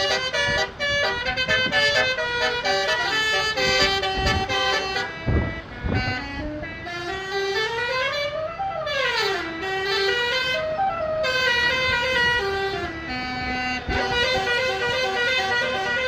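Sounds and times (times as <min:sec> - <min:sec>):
bus horn playing a melody: 0:00.0 - 0:16.0.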